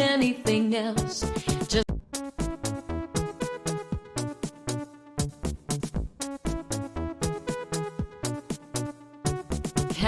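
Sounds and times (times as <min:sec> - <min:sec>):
electronic pop music: 0:00.0 - 0:10.0.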